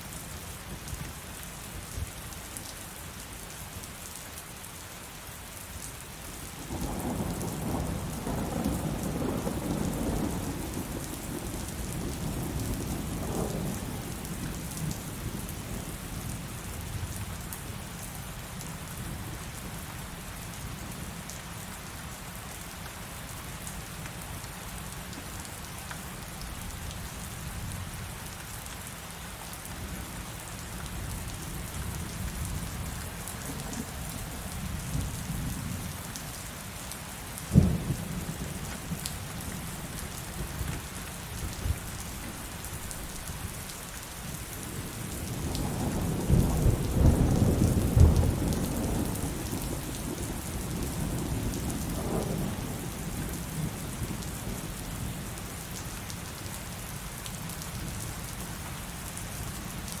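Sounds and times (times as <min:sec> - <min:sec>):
heavy rain: 0:00.0 - 1:00.0
thunder rumble: 0:44.6 - 0:49.9.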